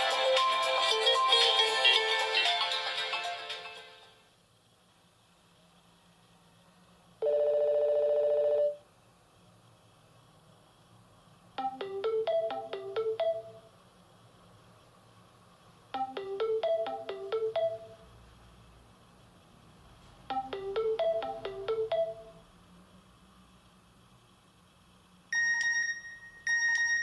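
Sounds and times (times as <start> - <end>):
mobile phone ringtone melody: 11.6 - 13.6, 16.0 - 18.1, 20.3 - 22.4, 25.4 - 27.0.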